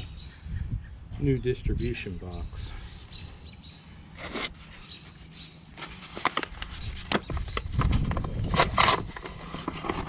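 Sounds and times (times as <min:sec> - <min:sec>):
dull rumble: 0:04.1 - 0:10.0.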